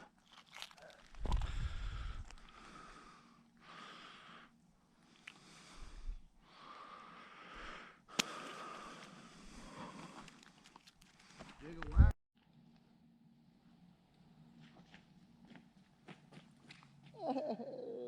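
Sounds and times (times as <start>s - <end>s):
person breathing: 1.0s - 11.6s.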